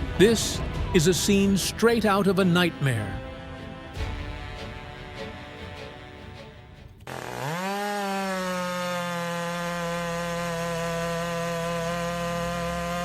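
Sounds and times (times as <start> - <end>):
background music: 0.0 - 7.1
power saw motor running: 7.0 - 13.0.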